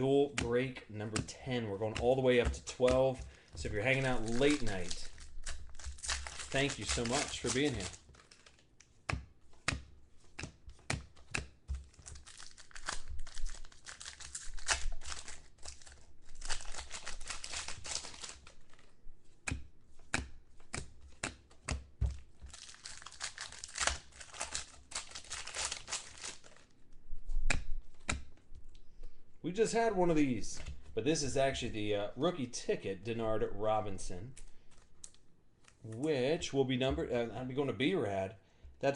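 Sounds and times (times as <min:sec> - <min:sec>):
cards being flicked through: 0:00.3 - 0:26.6
foil packs tearing and crinkling: 0:03.7 - 0:08.6, 0:11.8 - 0:18.9, 0:22.5 - 0:26.7.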